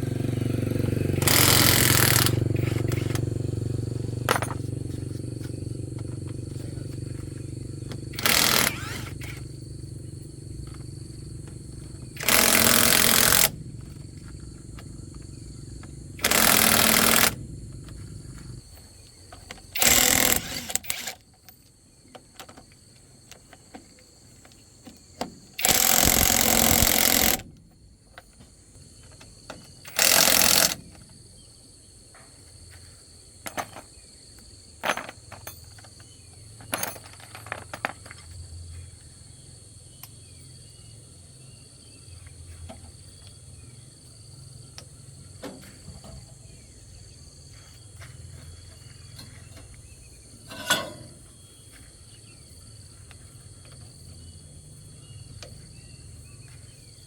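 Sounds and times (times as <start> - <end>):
hammering power tool bursts: 0.0 - 4.8, 5.9 - 18.5, 19.4 - 21.3, 25.6 - 27.6, 29.8 - 31.0
small metal clinks: 34.8 - 38.4, 50.4 - 51.2.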